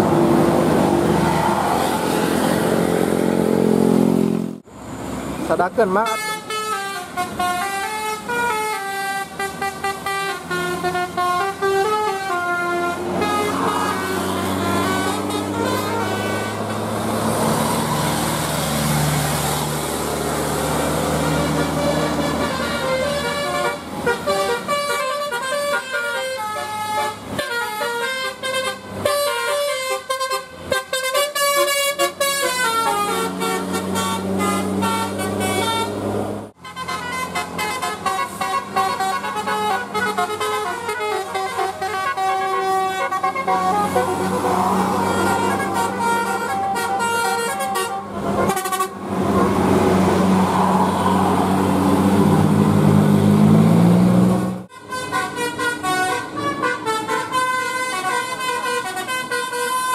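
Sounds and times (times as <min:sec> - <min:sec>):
bus engine rumble: 0:00.0 - 0:59.9
multi-tone air horn melodies: 0:06.0 - 0:16.9, 0:21.1 - 0:36.0, 0:36.6 - 0:49.6, 0:54.7 - 0:59.9.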